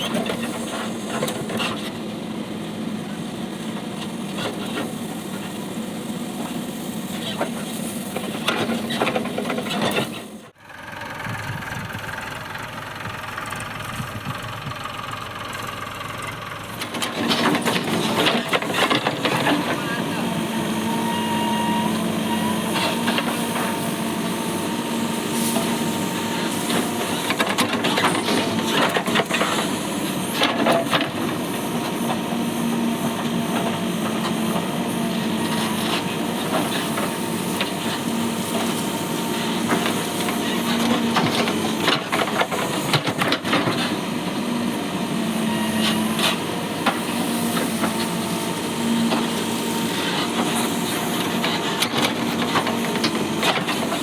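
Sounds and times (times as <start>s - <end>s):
diesel engine running: 0.1s - 54.0s.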